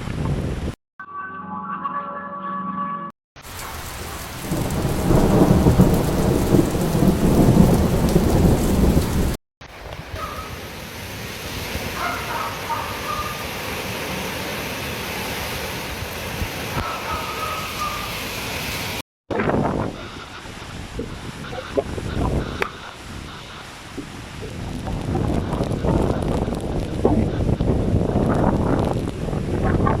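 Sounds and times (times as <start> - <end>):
strong wind: 0.0 - 0.8, 4.1 - 30.0
wind buffeting microphone: 0.0 - 0.8, 19.3 - 30.0
rain: 3.4 - 19.0, 19.7 - 30.0.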